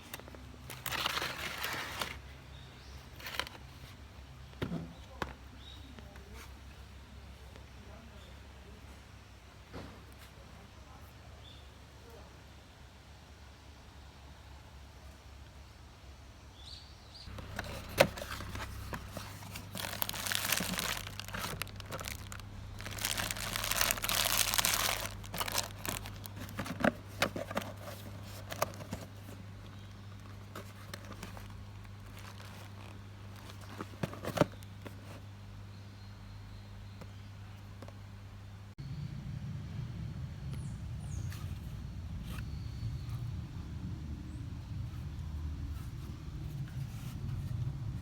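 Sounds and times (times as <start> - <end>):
crinkling and rustling: 0.0 - 6.8, 17.3 - 35.3, 44.9 - 48.0
low steady hum: 17.3 - 48.0.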